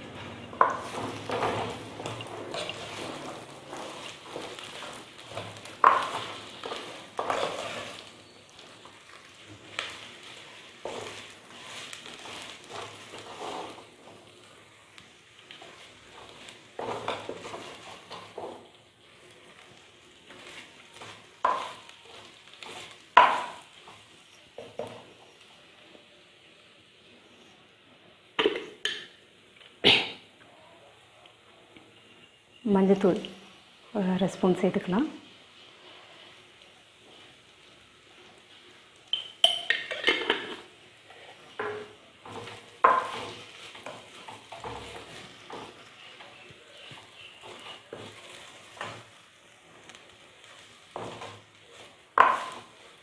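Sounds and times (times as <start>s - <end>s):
oil sizzling: 0.0s - 53.0s
spoon scraping and knocking a pot: 0.1s - 8.1s, 21.4s - 21.9s, 22.6s - 23.7s, 39.2s - 40.7s, 41.5s - 49.1s, 52.2s - 52.8s
spoon clinking on clay pot: 39.1s - 40.6s.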